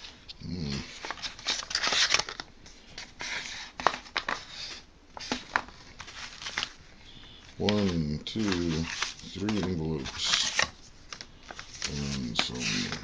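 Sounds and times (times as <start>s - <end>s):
cardboard box and paper rustling: 3.0s - 6.8s, 7.5s - 13.0s.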